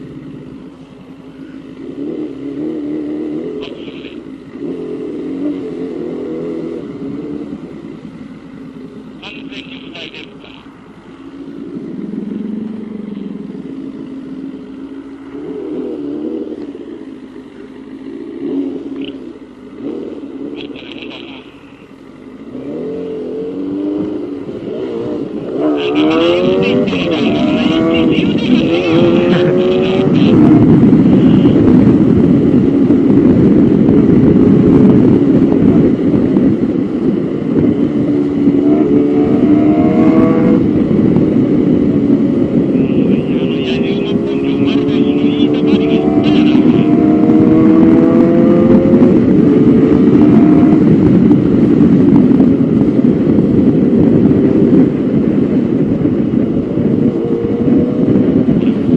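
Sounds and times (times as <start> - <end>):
motorcycle engine running: 0.0 - 58.9
wind noise: 22.6 - 58.9.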